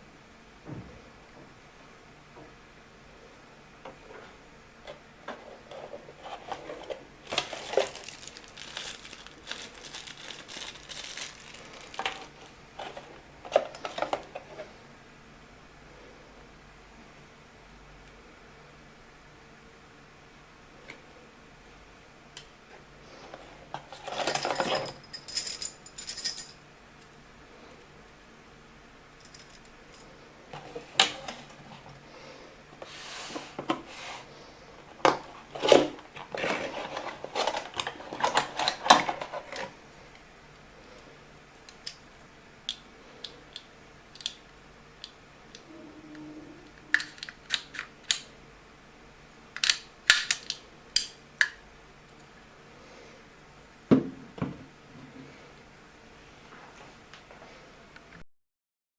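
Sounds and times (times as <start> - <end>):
lock parts clinking: 6.5 - 12.4, 29.2 - 30.1
keys jangling: 29.2 - 30.1.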